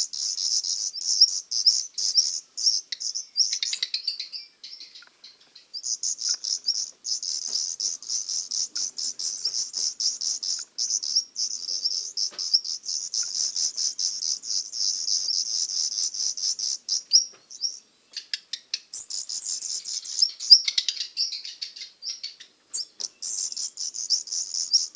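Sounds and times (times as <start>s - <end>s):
nestlings cheeping: 5.8s - 17.8s.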